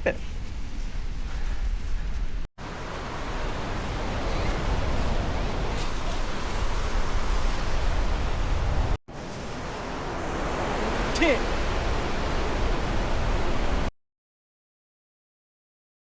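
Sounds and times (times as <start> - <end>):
surf rushing: 2.6 - 13.9
wind on microphone: 3.4 - 13.9.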